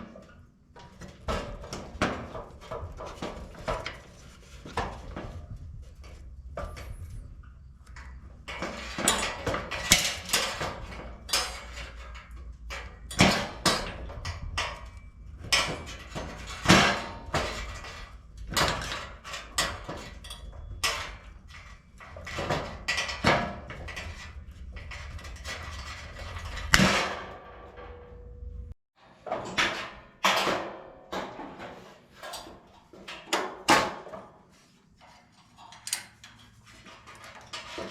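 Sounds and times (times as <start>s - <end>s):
knocks clatter and scrapes: 0.0s - 37.9s
low hum: 27.5s - 28.8s.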